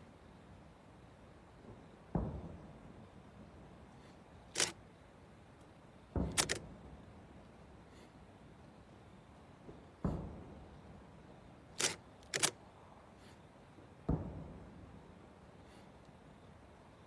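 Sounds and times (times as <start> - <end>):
dull thump: 1.6 - 2.8, 9.6 - 10.9, 14.0 - 15.0
sharp click: 4.6 - 4.8, 6.3 - 6.6, 11.8 - 12.6.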